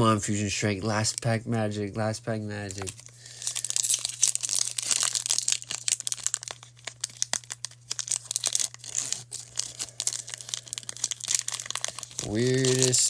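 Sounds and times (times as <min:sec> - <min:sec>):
foil wrapper tearing and crinkling: 0:02.6 - 0:13.0.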